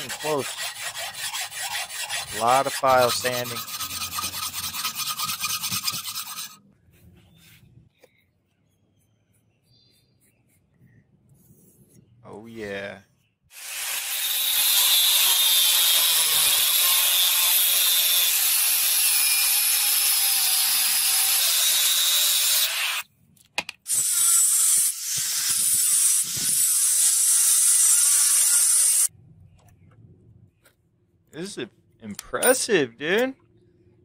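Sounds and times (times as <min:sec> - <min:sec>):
power sanding steel: 0:00.0 - 0:06.6, 0:13.6 - 0:23.0.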